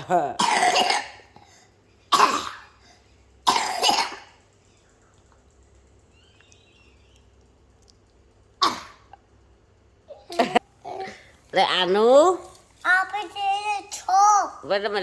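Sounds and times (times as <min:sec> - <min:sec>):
person coughing: 0:00.0 - 0:01.4, 0:02.1 - 0:02.8, 0:03.5 - 0:04.4.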